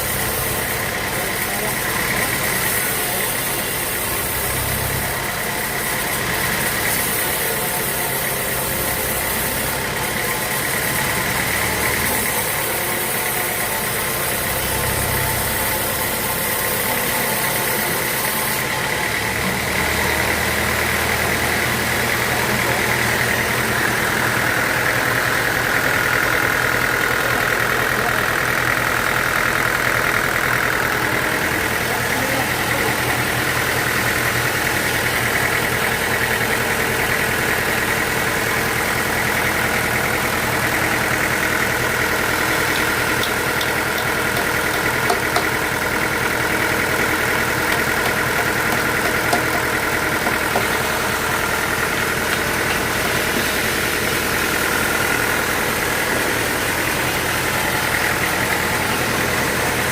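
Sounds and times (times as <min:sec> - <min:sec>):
sawmill machinery running: 0:00.0 - 0:59.9.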